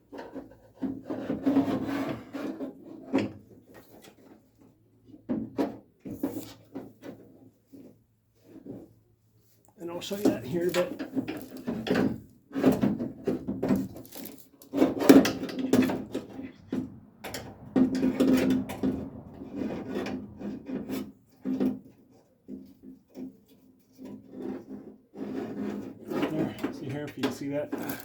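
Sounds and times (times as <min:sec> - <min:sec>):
metal parts scraping and rubbing: 0:13.7 - 0:16.6, 0:27.6 - 0:28.0.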